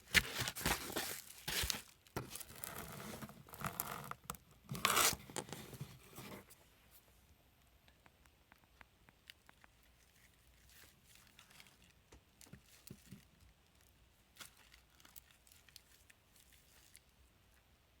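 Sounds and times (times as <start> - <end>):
packaging rustling: 0.0 - 3.8
small clicks and taps: 7.6 - 10.0.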